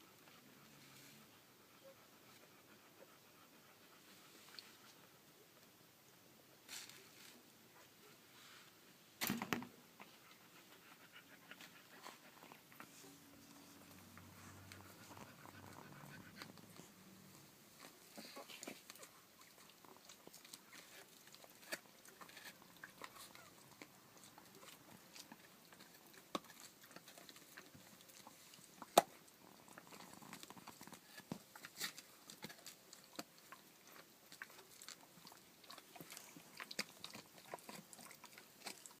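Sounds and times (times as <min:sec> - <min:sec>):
puppy mouth noises: 0:10.0 - 0:39.0.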